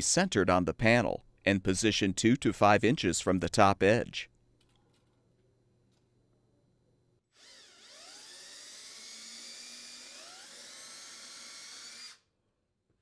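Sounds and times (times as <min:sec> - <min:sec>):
electric drill motor whine: 0:07.4 - 0:12.2.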